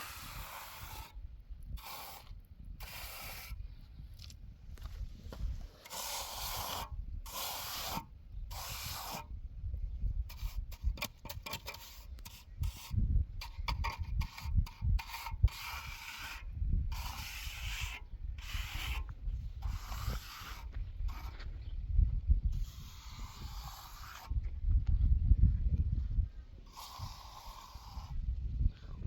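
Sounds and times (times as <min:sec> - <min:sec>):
rough scraping strokes: 0:00.0 - 0:01.2, 0:01.8 - 0:03.6, 0:04.8 - 0:09.3, 0:10.3 - 0:21.5, 0:22.6 - 0:24.4, 0:26.7 - 0:28.3.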